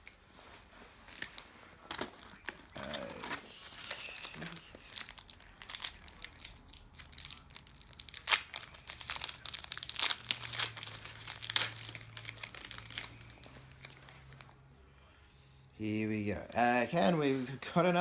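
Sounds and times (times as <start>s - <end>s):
wrapper tearing and crinkling: 1.0s - 14.6s.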